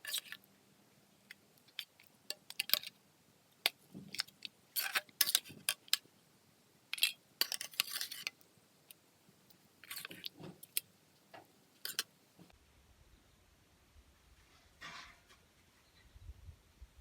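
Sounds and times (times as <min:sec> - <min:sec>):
short scraping: 0:14.4 - 0:16.0.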